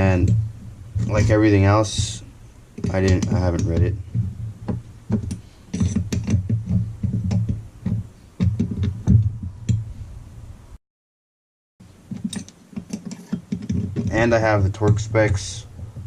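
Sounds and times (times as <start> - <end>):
wrench clicking and knocking: 5.1 - 9.0.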